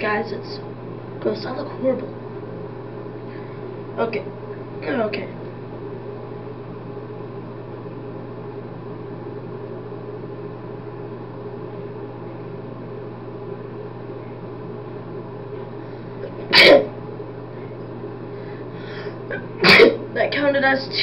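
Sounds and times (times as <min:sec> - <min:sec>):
steady low hum: 0:00.0 - 0:21.0
man sneezing: 0:16.5 - 0:16.9, 0:19.6 - 0:20.0.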